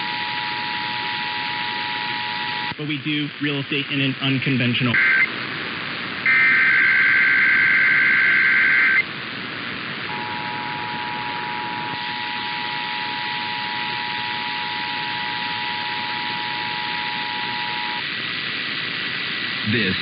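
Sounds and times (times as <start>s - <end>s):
radio hiss: 0.0s - 20.0s
buzzy data screech: 4.9s - 5.3s, 6.2s - 9.0s, 10.1s - 18.0s.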